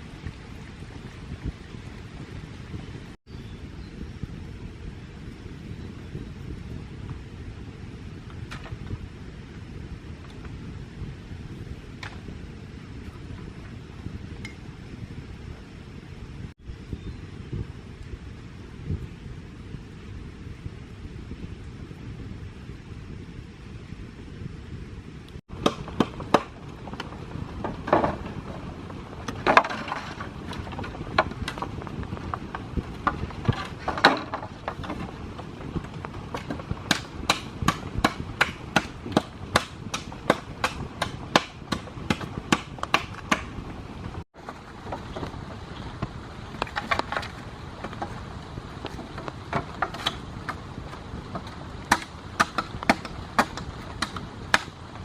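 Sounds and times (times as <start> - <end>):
sharp blows on wood: 36.3 - 43.6.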